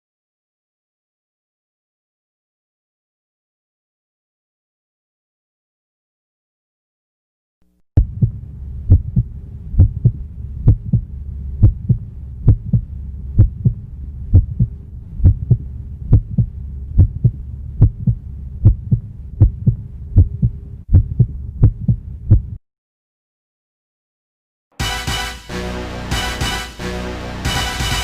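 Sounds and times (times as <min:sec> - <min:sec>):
heartbeat thumps: 0:08.0 - 0:22.6
steady low drone: 0:08.0 - 0:22.6, 0:24.8 - 0:28.0.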